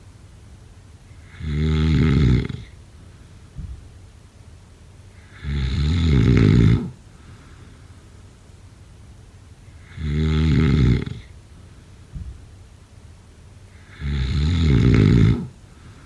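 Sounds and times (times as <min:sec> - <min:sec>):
person snoring: 0:01.2 - 0:02.8, 0:05.2 - 0:07.0, 0:09.8 - 0:11.3, 0:13.8 - 0:15.5.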